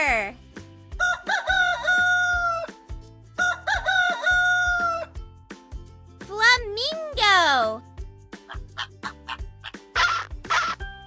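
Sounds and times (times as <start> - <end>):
children's music with steady beat: 0.0 - 11.0
rooster crowing: 1.0 - 2.7, 3.4 - 5.1.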